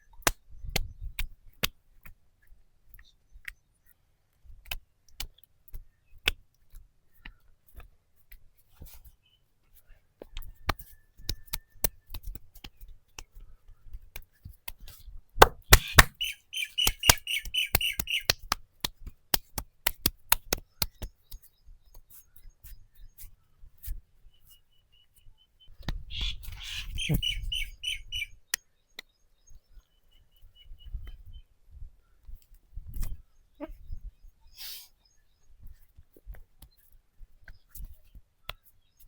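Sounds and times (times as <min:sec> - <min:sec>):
massage hand slaps: 0:15.4 - 0:16.1, 0:18.0 - 0:21.2
small bird chirping: 0:15.7 - 0:18.5, 0:24.2 - 0:32.2.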